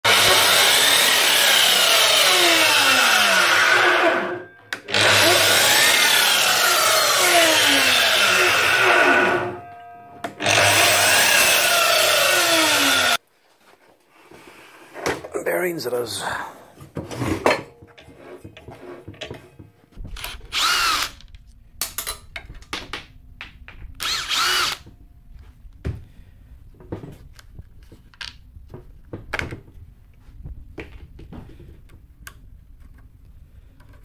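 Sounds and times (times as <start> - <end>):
power drill running: 0.1 - 9.6, 10.4 - 13.2, 20.2 - 21.2, 24.0 - 24.8
metal parts clicking and knocking: 20.1 - 23.0.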